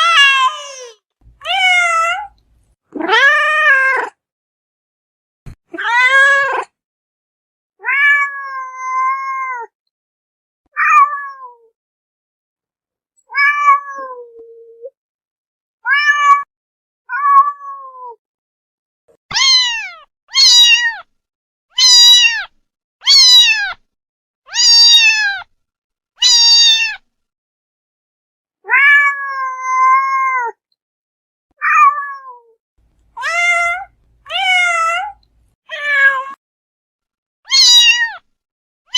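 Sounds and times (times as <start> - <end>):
cat meowing: 0.0 - 4.2, 7.8 - 9.7, 10.7 - 11.7, 13.3 - 14.3, 15.8 - 16.5, 17.1 - 18.2, 19.3 - 21.1, 21.7 - 23.8, 24.5 - 25.5, 26.2 - 27.0, 28.6 - 30.6, 31.6 - 32.6, 33.2 - 36.4, 37.5 - 38.2.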